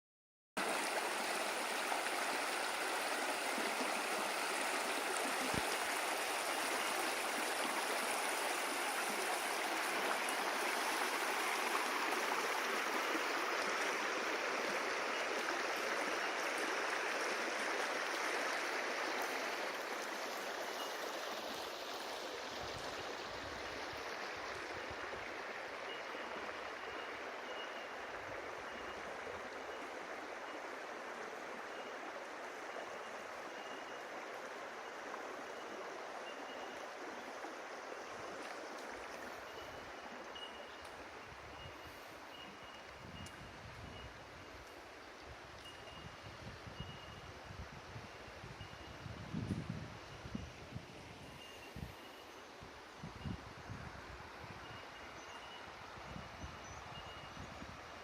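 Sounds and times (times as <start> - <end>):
river water rushing over rocks: 0.6 - 22.6.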